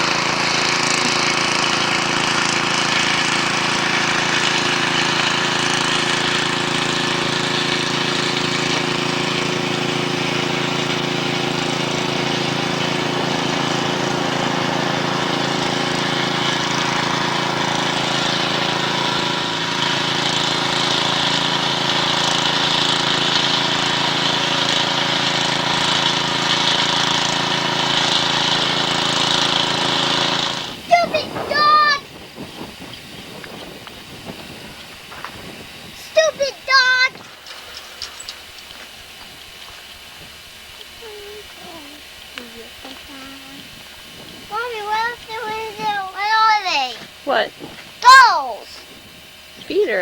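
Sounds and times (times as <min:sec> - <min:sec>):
machine engine running under load: 0:00.0 - 0:50.0
mechanical clatter and hiss: 0:32.2 - 0:48.0.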